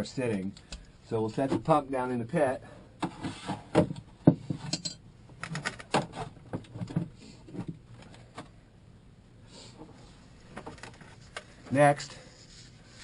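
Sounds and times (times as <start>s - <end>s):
quiet handling sounds: 9.6s - 13.0s.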